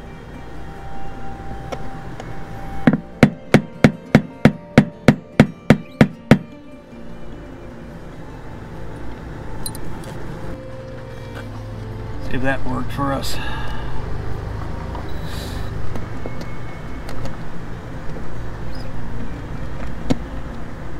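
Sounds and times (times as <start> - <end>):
hammer striking metal tool: 2.9 - 6.5.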